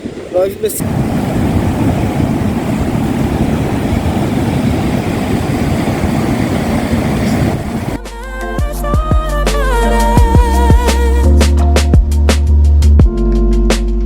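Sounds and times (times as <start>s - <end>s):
low rushing noise: 0.8s - 8.0s
r and b song with beat: 8.0s - 14.0s.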